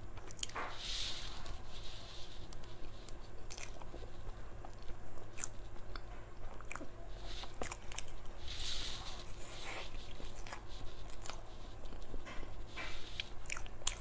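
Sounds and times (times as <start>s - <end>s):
person biting and chewing: 3.4s - 3.9s, 4.6s - 8.2s.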